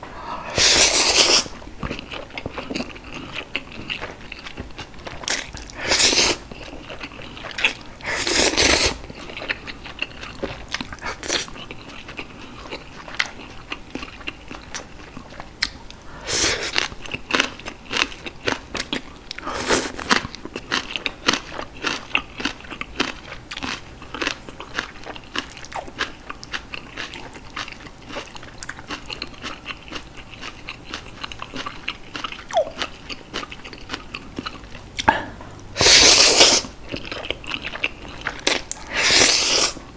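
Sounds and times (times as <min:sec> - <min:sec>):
crunching and chewing food: 0:00.3 - 0:39.9
wet mouth clicks: 0:32.5 - 0:32.9, 0:34.9 - 0:36.6.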